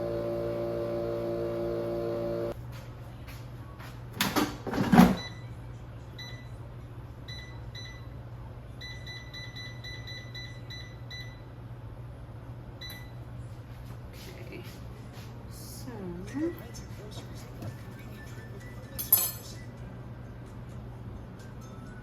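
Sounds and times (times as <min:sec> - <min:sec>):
low steady hum: 0:00.0 - 0:02.6.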